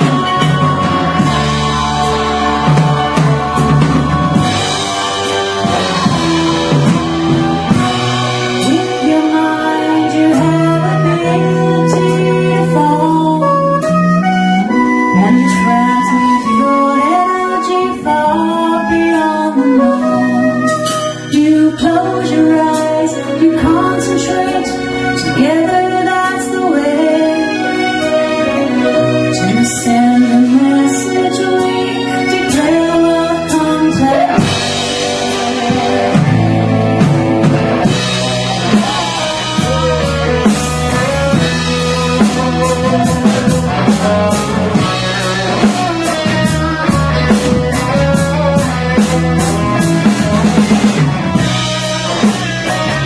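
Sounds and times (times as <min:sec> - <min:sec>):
woman singing long notes: 0:00.0 - 0:14.0, 0:14.6 - 0:36.2
drum kit: 0:00.0 - 0:17.3, 0:20.1 - 0:53.0
live band chords: 0:00.0 - 0:53.0.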